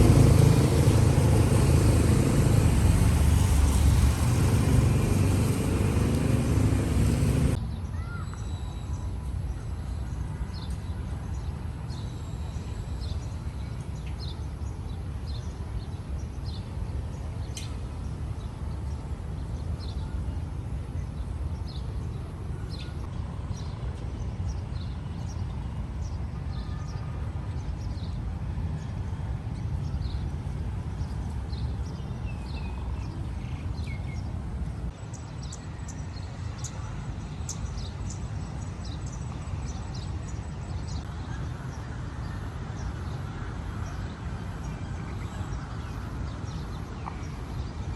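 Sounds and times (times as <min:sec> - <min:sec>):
traffic rumble: 0:00.0 - 0:07.6
wind: 0:00.0 - 0:47.9.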